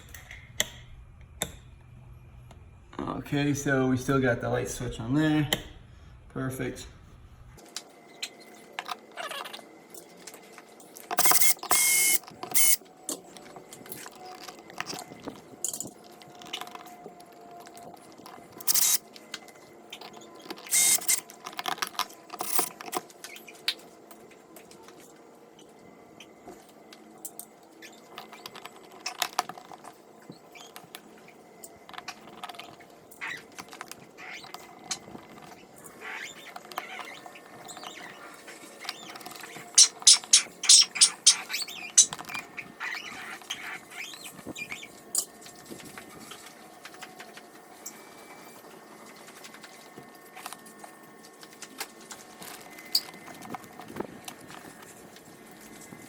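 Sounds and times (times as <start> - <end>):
small parts clicking and scraping: 7.8 - 24.3.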